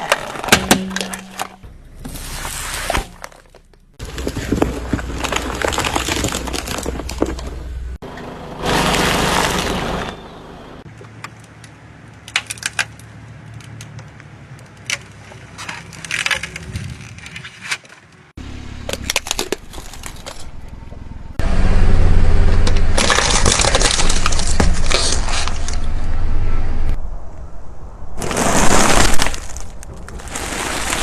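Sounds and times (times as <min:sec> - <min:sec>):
objects cracking and snapping: 0:02.9 - 0:07.6, 0:10.9 - 0:18.2, 0:18.8 - 0:20.8, 0:22.6 - 0:25.9
loud low rumble with crackling: 0:18.4 - 0:31.0.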